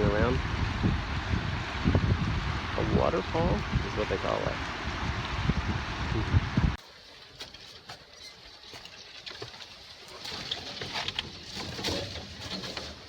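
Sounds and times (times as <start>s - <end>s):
rushing waterfall: 0.0s - 7.4s.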